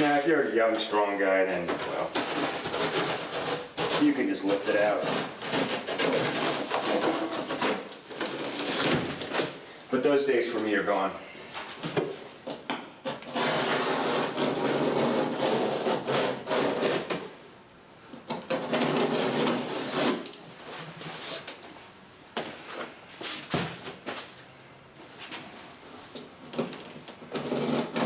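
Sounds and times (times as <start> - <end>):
knife cutting cardboard: 1.5 - 9.6, 13.0 - 17.3, 18.3 - 21.5, 26.6 - 28.0.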